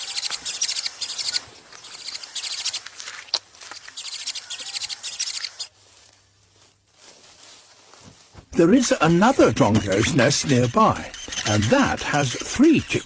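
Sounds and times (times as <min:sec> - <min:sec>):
nestling begging chirps: 0:00.0 - 0:03.0, 0:03.6 - 0:05.8, 0:08.6 - 0:13.0.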